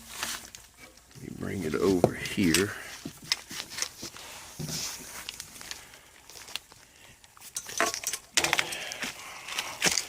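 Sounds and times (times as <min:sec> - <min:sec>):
objects being handled clicking: 0:02.0 - 0:10.0.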